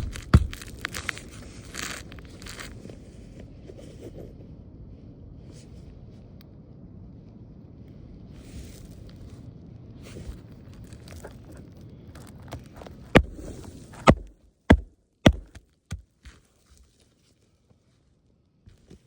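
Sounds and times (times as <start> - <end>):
knocks on a shingle roof: 14.0 - 16.0.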